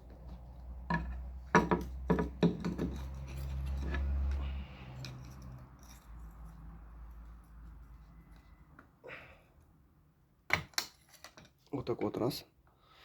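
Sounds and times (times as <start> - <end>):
hard parts clicking and knocking: 0.2 - 4.4.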